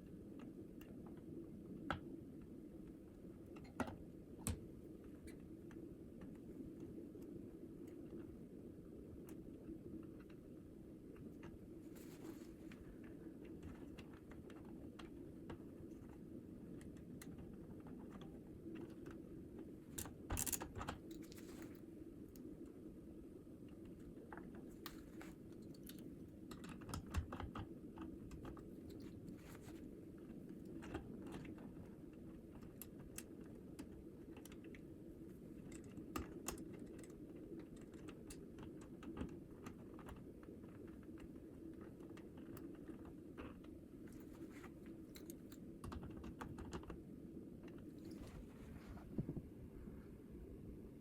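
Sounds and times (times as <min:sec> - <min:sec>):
steady low hum: 0:00.0 - 0:51.0
small tools clicking and tapping: 0:20.0 - 0:21.4.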